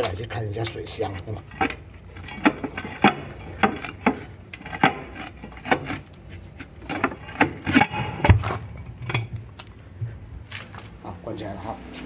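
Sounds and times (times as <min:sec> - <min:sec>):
metal lid clanking shut: 0:06.9 - 0:09.5.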